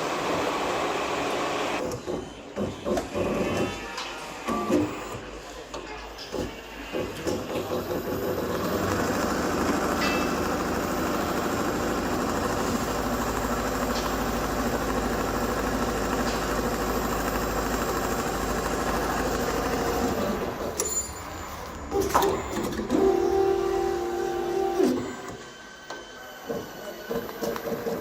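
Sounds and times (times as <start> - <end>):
perforation machine running: 6.4 - 28.0.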